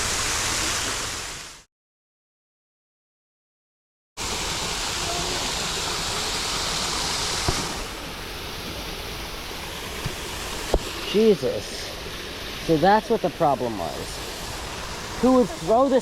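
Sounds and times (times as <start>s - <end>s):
waterfall rushing: 4.2s - 16.0s.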